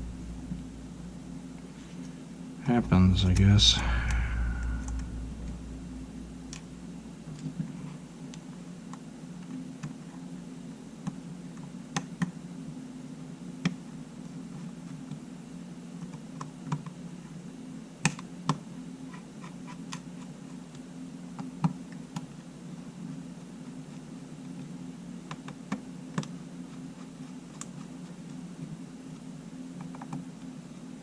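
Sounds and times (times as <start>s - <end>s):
steady low hum: 0.0s - 14.4s
small clicks and taps of parts: 16.0s - 17.0s, 18.0s - 22.4s, 25.3s - 26.4s, 27.2s - 28.4s, 29.1s - 30.5s.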